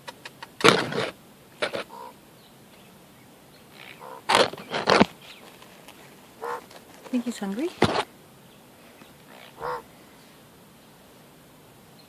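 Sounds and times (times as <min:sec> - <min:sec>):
raven raspy calls: 0:00.8 - 0:02.2, 0:03.7 - 0:04.8, 0:06.4 - 0:06.8, 0:09.2 - 0:10.1.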